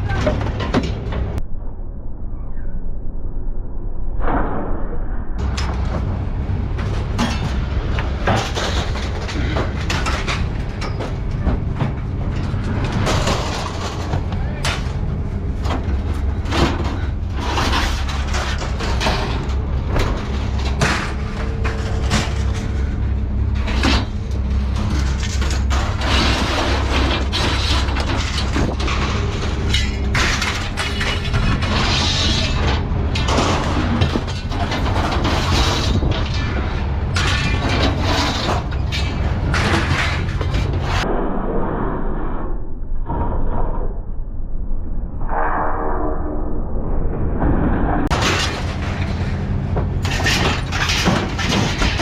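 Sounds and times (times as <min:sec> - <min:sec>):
scrap metal clanking and crashing: 0:00.0 - 0:01.4, 0:05.4 - 0:41.0, 0:48.0 - 0:52.0
low engine rumble: 0:00.0 - 0:41.6, 0:46.2 - 0:52.0.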